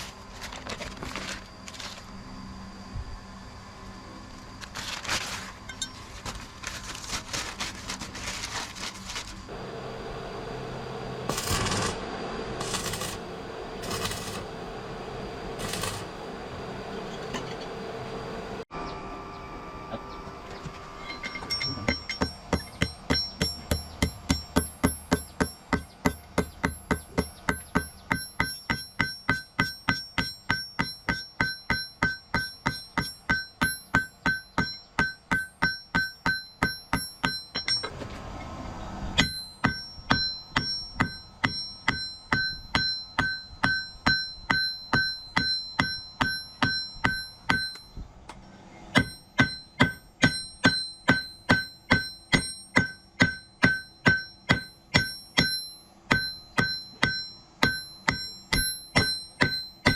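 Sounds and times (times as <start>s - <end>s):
hammer ringing on an anvil: 15.6s - 16.0s, 21.0s - 38.0s, 39.2s - 48.1s, 49.0s - 59.9s.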